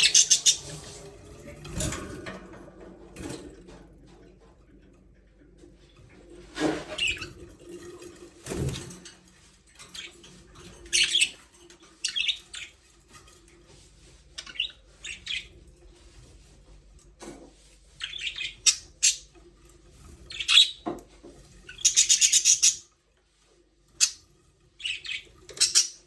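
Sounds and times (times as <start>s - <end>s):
budgerigars chirping: 0.0s - 0.7s, 21.7s - 22.8s, 24.8s - 26.0s.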